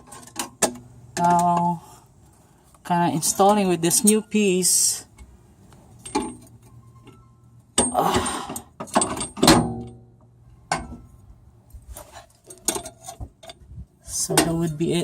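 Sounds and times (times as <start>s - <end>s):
metal rattling: 5.9s - 11.2s
metal tools clanking and clicking: 6.0s - 10.0s, 12.3s - 13.6s.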